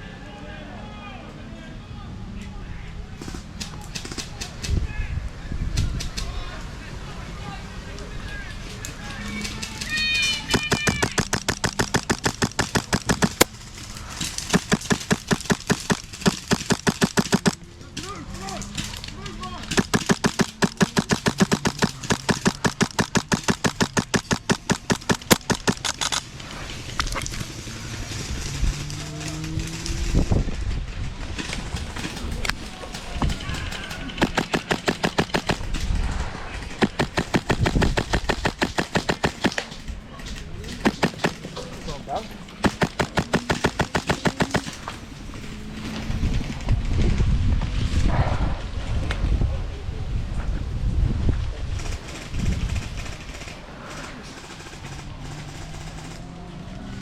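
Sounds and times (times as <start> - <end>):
airsoft rifle automatic fire: 9.1 - 17.6, 19.7 - 26.4, 31.4 - 36.0, 36.6 - 40.0, 40.6 - 41.9, 42.6 - 45.1, 51.8 - 56.4.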